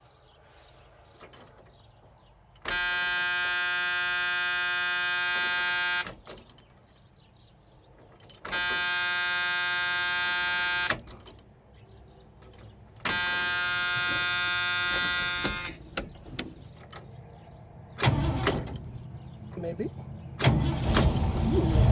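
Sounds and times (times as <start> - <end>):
dash warning buzzer: 2.6 - 6.2, 8.5 - 11.0, 13.0 - 15.8.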